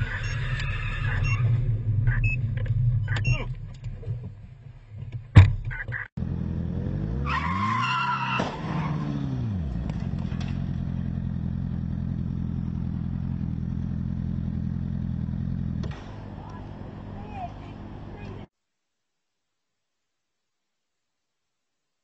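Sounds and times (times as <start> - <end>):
tyre screech: 0.0 - 1.8, 7.2 - 9.3
car engine revving: 6.2 - 18.5.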